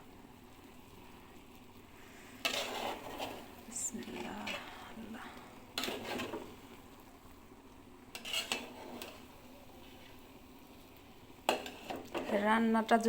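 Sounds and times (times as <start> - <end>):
spoon scraping a pot: 2.4 - 4.8, 5.7 - 6.7, 8.1 - 10.2, 11.4 - 12.6.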